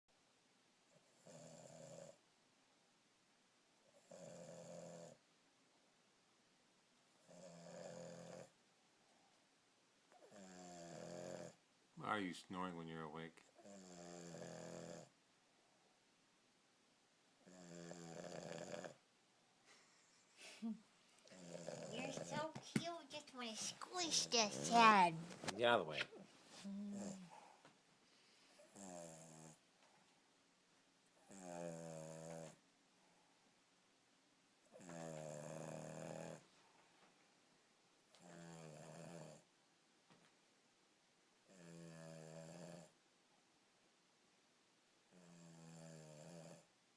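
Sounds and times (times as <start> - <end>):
dog snoring: 0.9 - 2.2, 3.8 - 5.2, 7.2 - 8.6, 10.1 - 11.6, 13.5 - 15.2, 17.4 - 19.0, 21.2 - 22.5, 26.9 - 27.6, 28.6 - 29.6, 31.2 - 32.6, 34.7 - 36.5, 38.2 - 39.5, 41.4 - 43.0, 45.1 - 46.8.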